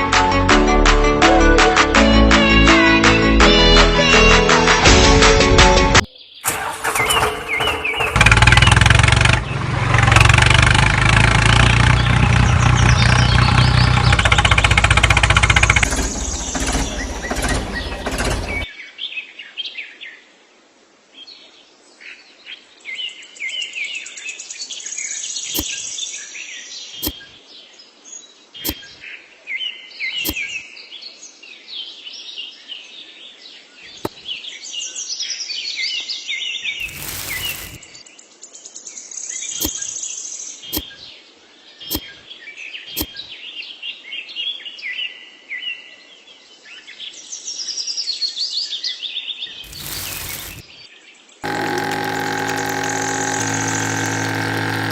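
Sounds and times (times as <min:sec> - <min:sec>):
birds chirping: 0:06.1 - 0:10.3, 0:11.6 - 0:18.7
sharp clicks: 0:51.4 - 0:54.9.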